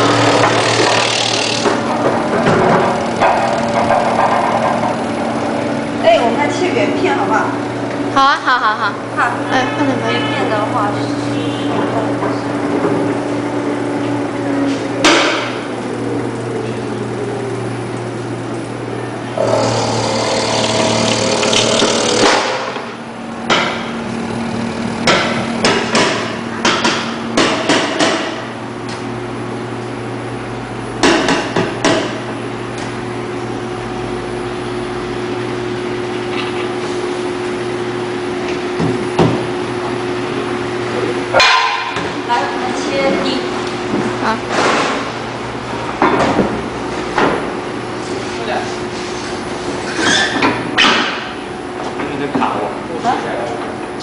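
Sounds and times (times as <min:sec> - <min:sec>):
vegetable cutting machine motor hum: 0:00.0 - 0:08.2, 0:19.2 - 0:27.4.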